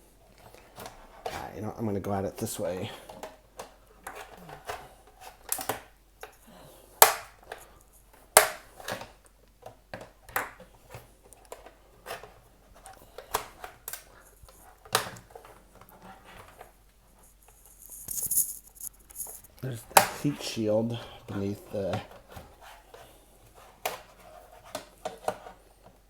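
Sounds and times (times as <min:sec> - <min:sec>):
plastic clips snapping: 0:05.4 - 0:05.9
high scraping rustle: 0:15.9 - 0:24.7.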